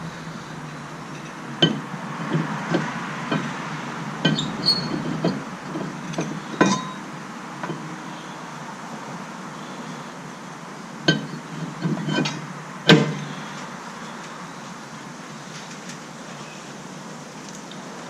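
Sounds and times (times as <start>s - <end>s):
metal parts and tools clinking: 0.7s - 8.0s, 11.1s - 13.5s.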